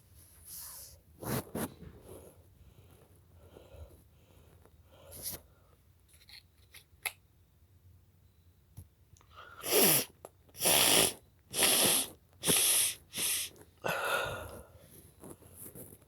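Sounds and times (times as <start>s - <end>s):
person sneezing: 9.6s - 14.2s.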